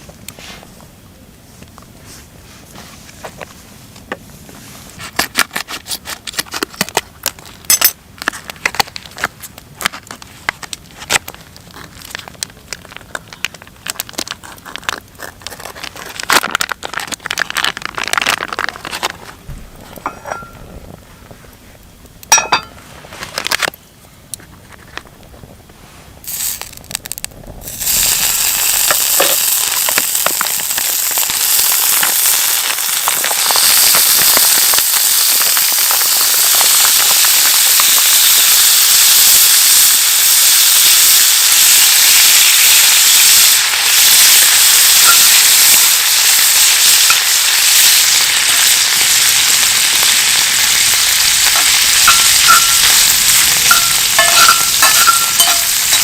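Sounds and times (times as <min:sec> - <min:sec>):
food sizzling in a pan: 0:26.3 - 0:56.0.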